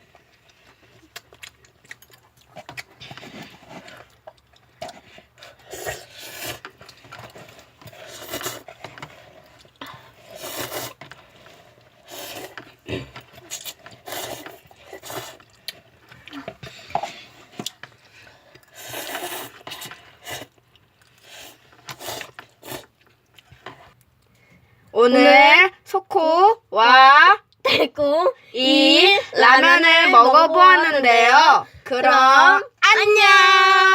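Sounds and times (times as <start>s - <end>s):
noodles being slurped: 0.3s - 24.0s.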